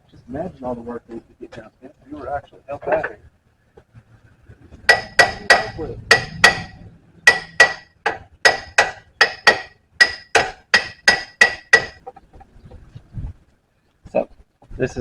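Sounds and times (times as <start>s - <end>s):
hammer striking metal: 4.9s - 12.0s.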